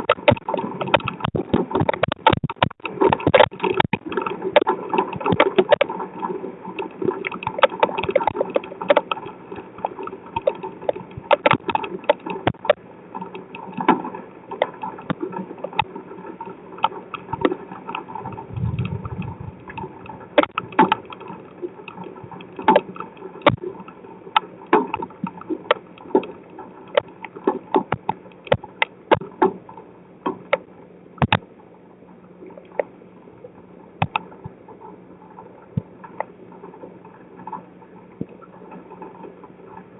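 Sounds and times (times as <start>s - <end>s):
raindrops tapping on camera: 0.0s - 31.5s, 34.0s - 39.9s
low rumble: 18.2s - 20.5s.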